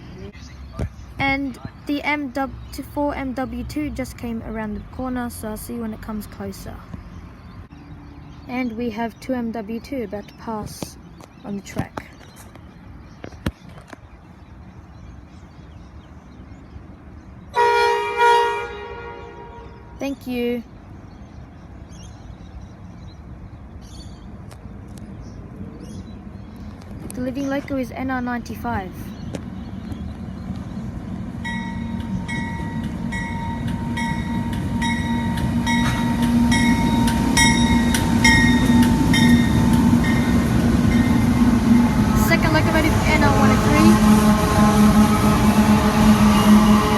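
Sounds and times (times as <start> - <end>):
locomotive horn blasts: 17.5 - 20.0, 31.5 - 46.9.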